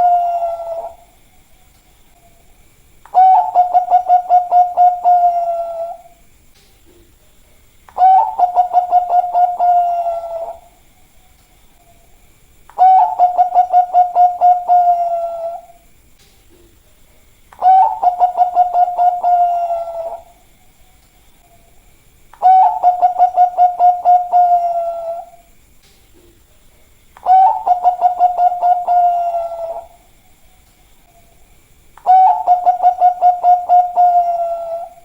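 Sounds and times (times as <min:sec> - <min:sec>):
dove cooing: 0:00.0 - 0:01.1, 0:03.1 - 0:06.2, 0:08.0 - 0:10.8, 0:12.8 - 0:15.8, 0:17.6 - 0:20.4, 0:22.4 - 0:25.5, 0:27.2 - 0:30.1, 0:32.0 - 0:35.0.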